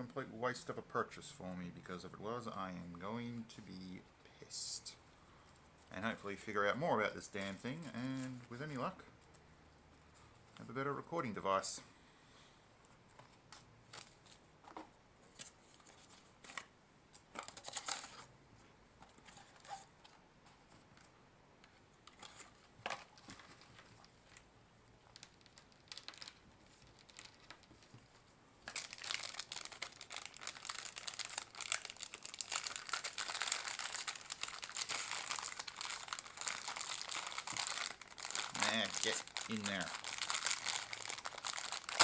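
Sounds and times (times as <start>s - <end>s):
packaging crinkling: 25.1s - 42.0s.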